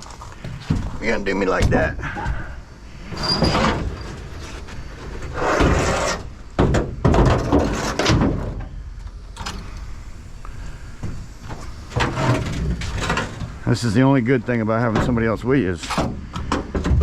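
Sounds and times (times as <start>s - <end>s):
scraping noises: 3.0s - 6.3s, 10.9s - 14.0s.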